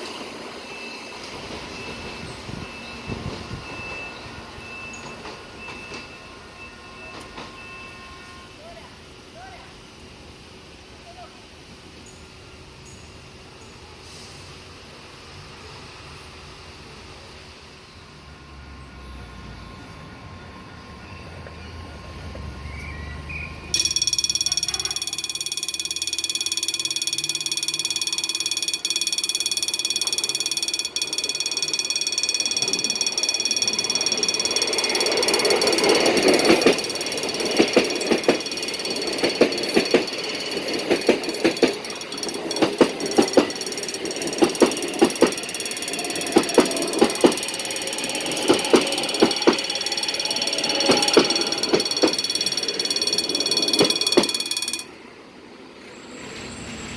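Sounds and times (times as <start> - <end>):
train rumbling: 16.6 - 56.9
wheels clacking over rail joints: 23.7 - 54.9.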